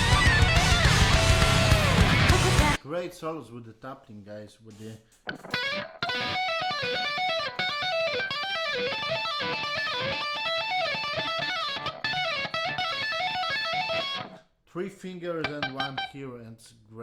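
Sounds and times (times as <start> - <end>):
band playing: 0.0 - 2.8
tapped electric guitar solo: 0.0 - 2.8, 5.3 - 14.4, 15.4 - 16.2.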